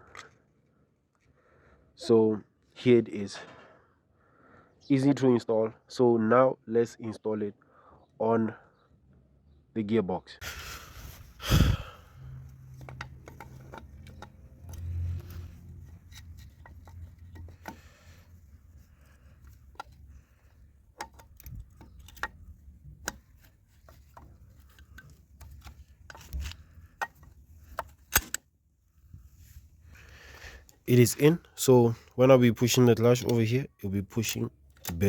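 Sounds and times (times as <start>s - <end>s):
light metal clicks and knocks: 12.2s - 28.4s.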